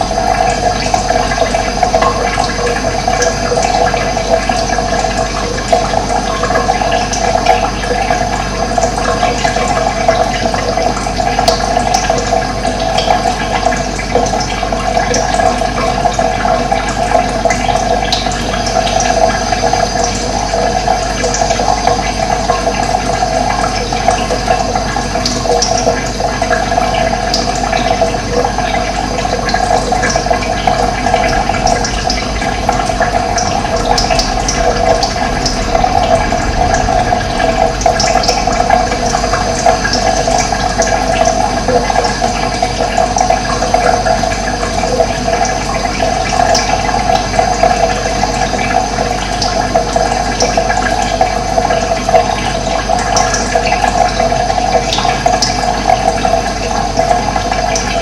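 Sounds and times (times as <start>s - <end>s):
stream water rushing: 30.0s - 42.8s.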